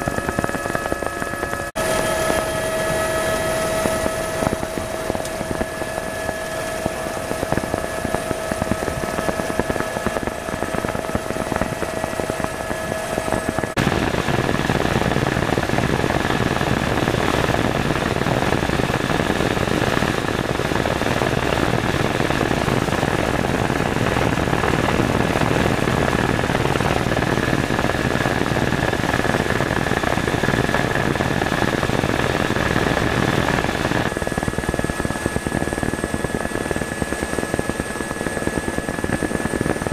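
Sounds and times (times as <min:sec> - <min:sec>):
low hum: 0:00.0 - 0:30.1
helicopter engine and rotors: 0:00.0 - 0:39.9.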